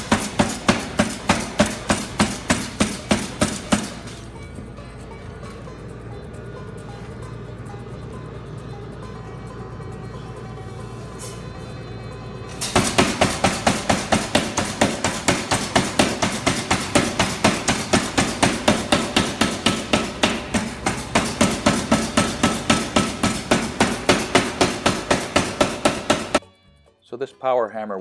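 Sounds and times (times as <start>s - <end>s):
power hammer blows: 0.0s - 4.5s, 12.5s - 26.4s
steady machine hum: 0.0s - 26.4s.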